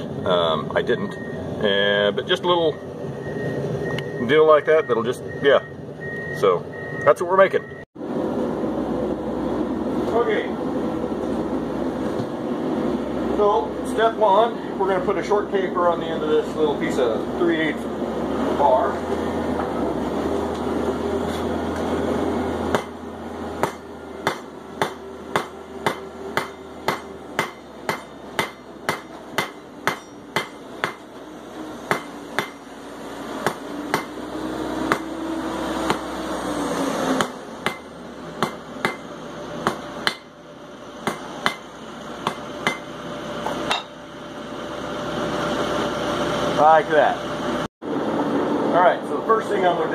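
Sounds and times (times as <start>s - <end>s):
hammer striking steel on anvil: 22.7s - 23.0s, 23.6s - 31.2s, 31.9s - 32.7s, 33.4s - 34.2s, 34.8s - 35.2s, 35.8s - 36.2s, 37.2s - 40.4s, 41.0s - 44.0s.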